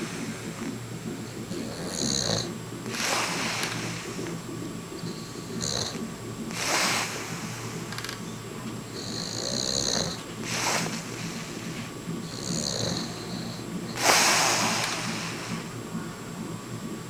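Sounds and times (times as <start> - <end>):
man snoring: 1.5 - 4.3, 5.0 - 7.2, 8.9 - 15.7.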